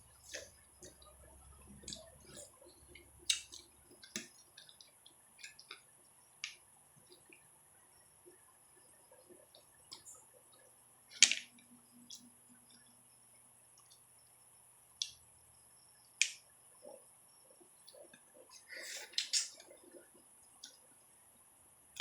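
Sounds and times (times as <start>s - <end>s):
quiet chewing: 0.0s - 5.9s, 16.8s - 21.0s
mouth clicks and smacks: 3.3s - 5.8s, 17.9s - 20.8s.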